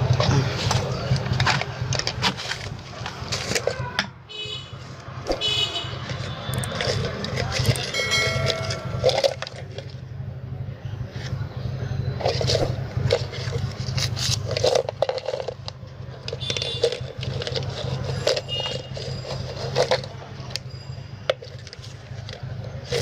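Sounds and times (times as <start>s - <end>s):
metal parts clinking on work surface: 6.5s - 9.9s, 12.2s - 23.0s.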